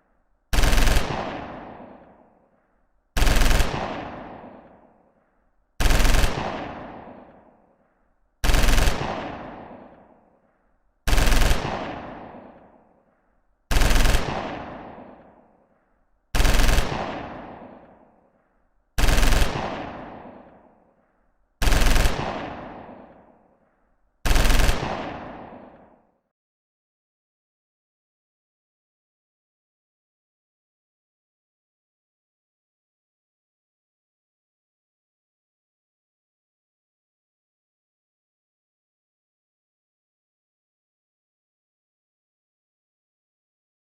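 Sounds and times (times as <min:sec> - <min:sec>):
machine gun bursts with echo: 0:00.5 - 0:02.4, 0:03.2 - 0:05.1, 0:05.8 - 0:07.7, 0:08.4 - 0:10.4, 0:11.0 - 0:13.0, 0:13.7 - 0:15.5, 0:16.3 - 0:18.2, 0:19.0 - 0:21.0, 0:21.6 - 0:23.6, 0:24.2 - 0:26.1.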